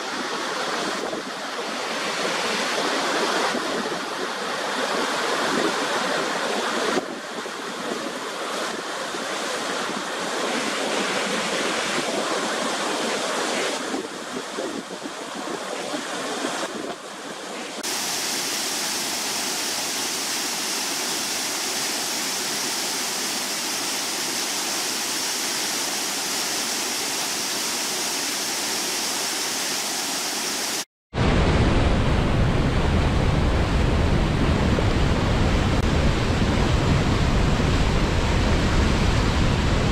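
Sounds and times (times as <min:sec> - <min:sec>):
waterfall rushing and splashing: 0:00.0 - 0:31.3.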